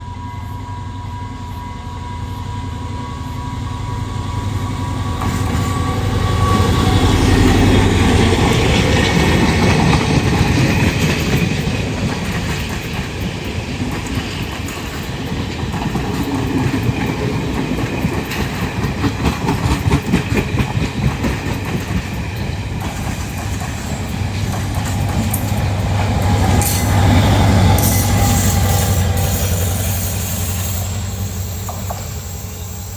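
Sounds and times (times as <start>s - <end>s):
train wheels clattering on rails: 4.6s - 32.6s
locomotive engine drone: 22.5s - 32.9s.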